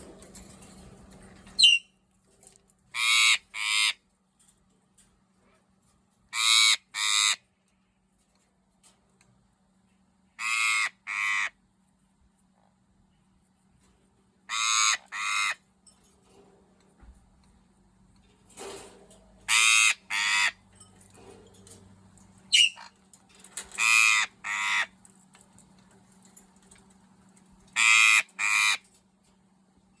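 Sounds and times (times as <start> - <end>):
parrot high squeak: 1.6 - 1.9, 3.0 - 4.0, 22.5 - 22.9
parrot squawking: 1.6 - 1.9, 3.0 - 4.0, 6.3 - 7.4, 10.4 - 11.6, 14.5 - 15.6, 19.5 - 20.6, 22.5 - 22.9, 23.8 - 24.9, 27.8 - 28.8.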